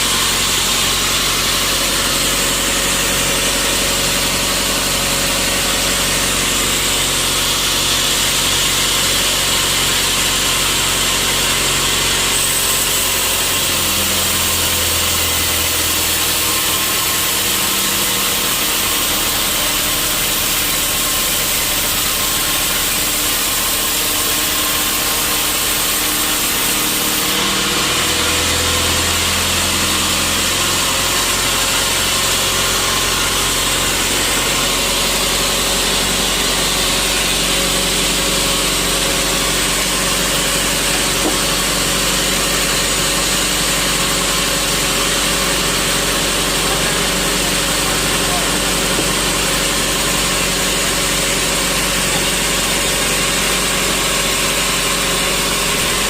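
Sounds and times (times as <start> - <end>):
sawmill saw running: 0.0 - 56.0.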